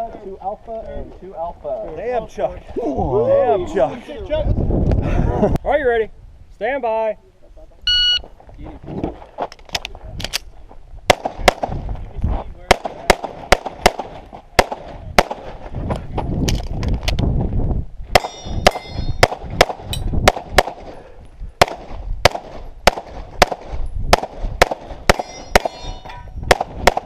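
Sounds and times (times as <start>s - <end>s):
pistol shots: 12.7s - 15.5s, 18.1s - 20.9s, 21.6s - 27.0s
bullets ringing on steel targets: 18.2s - 19.3s, 25.1s - 26.4s.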